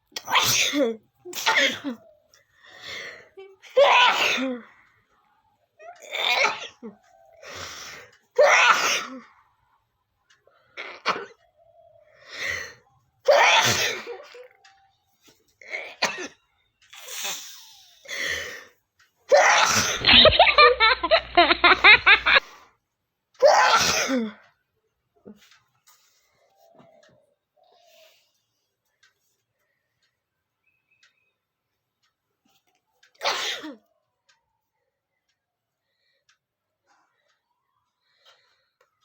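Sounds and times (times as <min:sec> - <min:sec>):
woman sneezing: 0:00.2 - 0:01.9.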